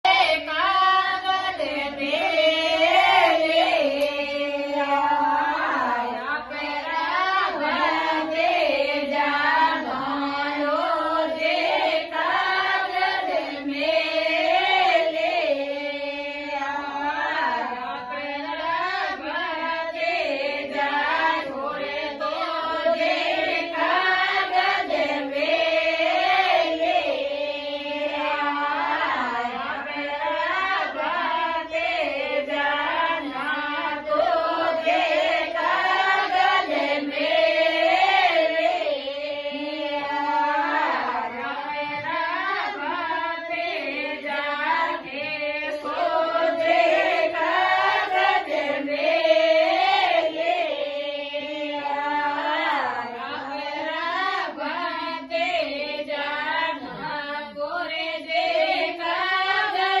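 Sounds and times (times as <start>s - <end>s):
woman singing devotional song: 0.0s - 60.0s.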